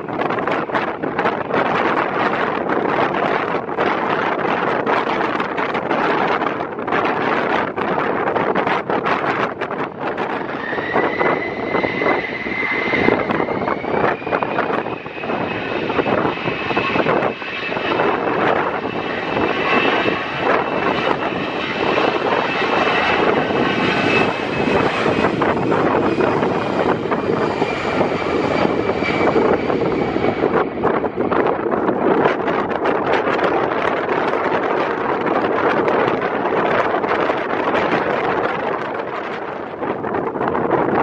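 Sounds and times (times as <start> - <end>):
wind buffeting microphone: 0.0 - 41.0
jet engines spooling up: 8.6 - 38.8.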